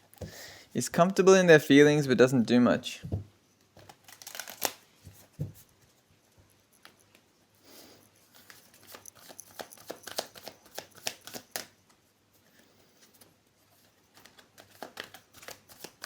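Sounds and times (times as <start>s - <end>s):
soft card rustle: 3.6s - 16.0s
cards clicking on a table: 8.8s - 11.7s.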